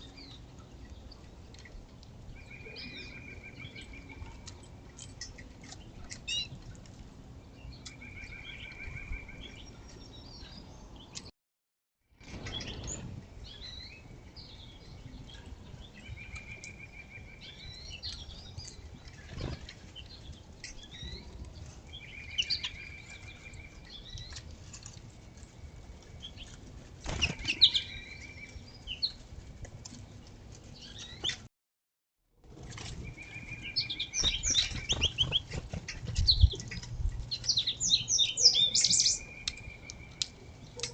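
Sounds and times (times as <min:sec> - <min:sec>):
songbirds chirping: 0:00.0 - 0:11.3, 0:12.2 - 0:31.5, 0:32.4 - 0:40.9
wing flutters: 0:26.5 - 0:27.8, 0:34.2 - 0:37.2
bird trill: 0:33.0 - 0:35.5, 0:36.2 - 0:40.2.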